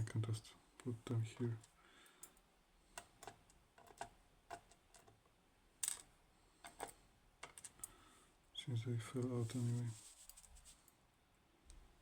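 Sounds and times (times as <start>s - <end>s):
small lock pins clicking: 3.0s - 5.1s.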